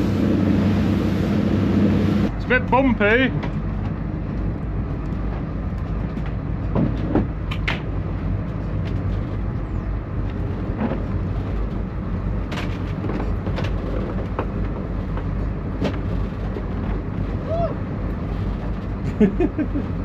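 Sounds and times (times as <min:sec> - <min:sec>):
motor boat engine running: 0:00.0 - 0:20.0
hull knocking and splashing: 0:05.2 - 0:09.5.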